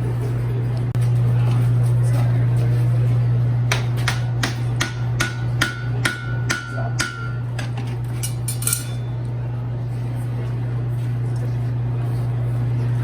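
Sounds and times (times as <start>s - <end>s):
steady low hum: 0.0s - 13.0s
hammer striking hot iron on anvil: 3.7s - 9.1s.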